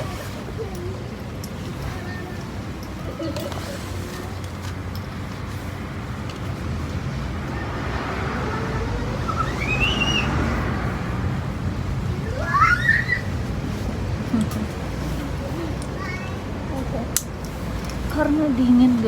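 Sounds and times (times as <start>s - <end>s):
road traffic rumble: 0.0s - 19.0s
vehicle passing: 3.5s - 19.0s
high rising call: 7.4s - 13.8s.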